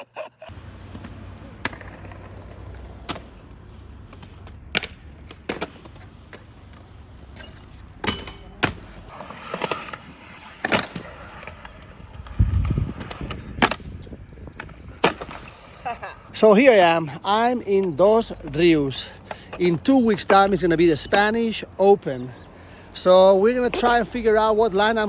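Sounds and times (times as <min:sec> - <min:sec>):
skateboards clacking and landing: 0:00.5 - 0:16.4
low rolling rumble: 0:09.0 - 0:16.3.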